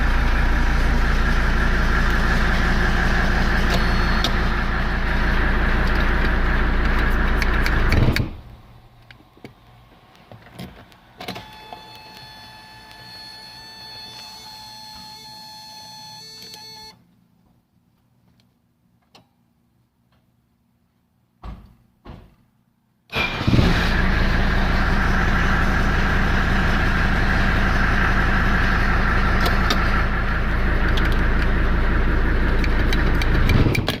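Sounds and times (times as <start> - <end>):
car engine running: 0.0 - 9.0, 23.4 - 34.0.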